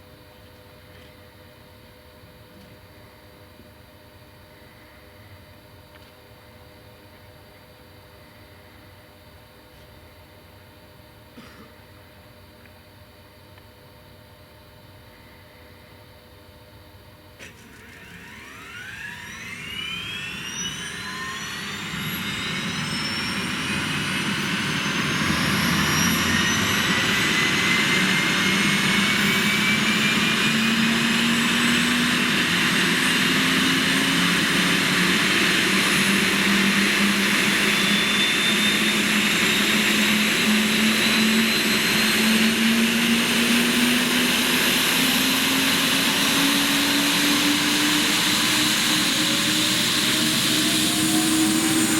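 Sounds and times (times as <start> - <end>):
helicopter turbine whine: 17.4 - 51.9
rotor hum rising: 17.4 - 51.9.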